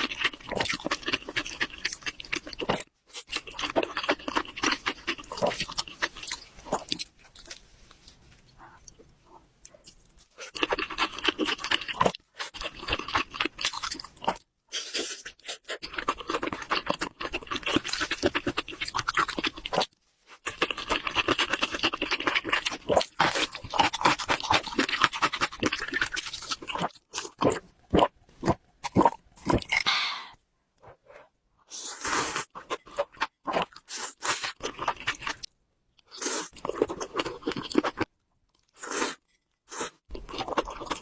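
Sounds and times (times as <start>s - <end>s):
close chewing and biting food: 0.0s - 9.0s, 9.7s - 29.9s, 32.0s - 41.0s.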